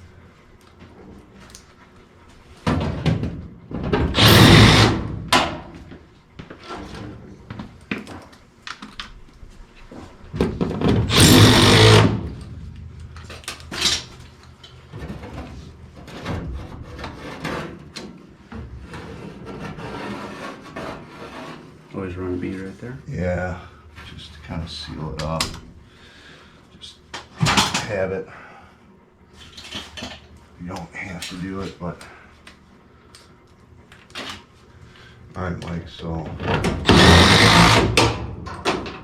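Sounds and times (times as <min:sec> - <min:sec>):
screw gun driving screws into metal: 0:04.1 - 0:05.0, 0:11.1 - 0:12.1, 0:36.8 - 0:38.0.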